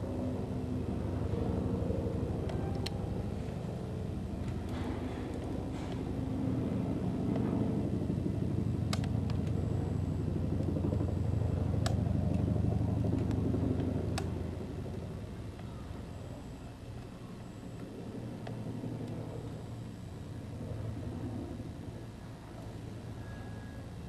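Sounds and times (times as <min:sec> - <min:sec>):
helicopter rotor rumble: 0:00.0 - 0:24.0
faint sharp clicks: 0:08.9 - 0:09.6, 0:13.2 - 0:14.3.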